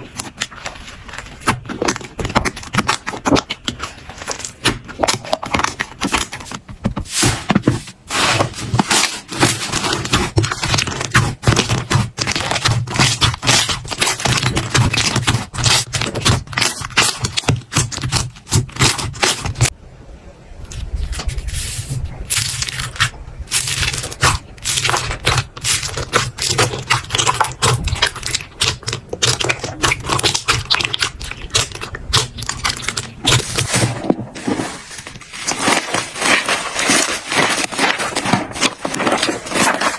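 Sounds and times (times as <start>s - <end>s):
slime crackling and popping: 1.4s - 6.4s, 9.3s - 19.7s, 22.3s - 33.8s.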